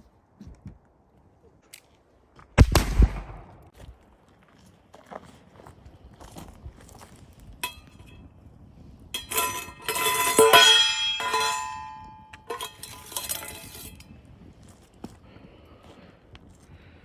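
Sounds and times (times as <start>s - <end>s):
metal cookware clattering: 9.2s - 14.0s.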